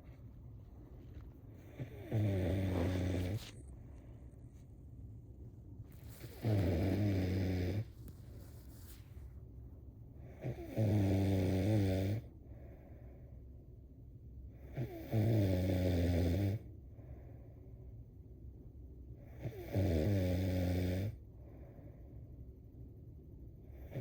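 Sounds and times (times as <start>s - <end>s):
person snoring: 1.8s - 3.5s, 6.2s - 7.9s.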